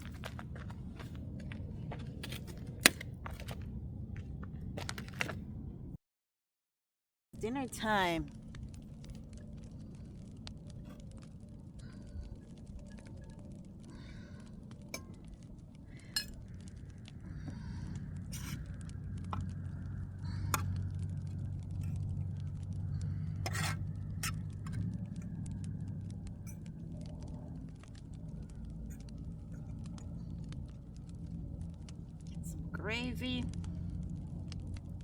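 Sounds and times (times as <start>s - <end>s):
low steady hum: 7.4s - 35.0s.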